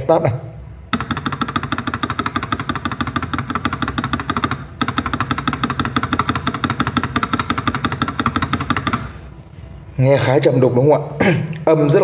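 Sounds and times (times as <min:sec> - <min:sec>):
spacebar clacks on mechanical keyboard: 0:00.9 - 0:09.1.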